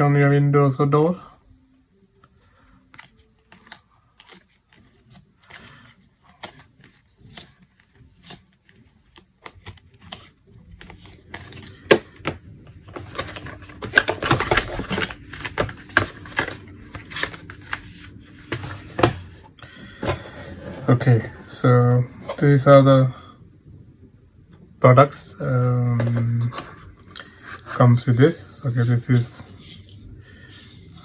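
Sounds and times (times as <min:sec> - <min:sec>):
packaging rustling: 0:02.5 - 0:22.6.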